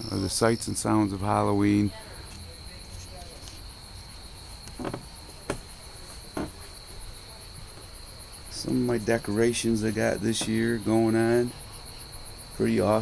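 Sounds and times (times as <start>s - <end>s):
crickets chirping: 0.0s - 13.0s
short knocks: 4.7s - 6.7s, 10.3s - 11.0s.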